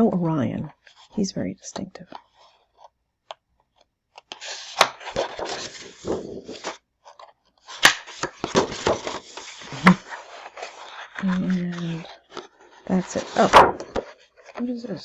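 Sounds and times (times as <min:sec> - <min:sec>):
paper sheets rustling and crinkling: 0:04.2 - 0:15.0.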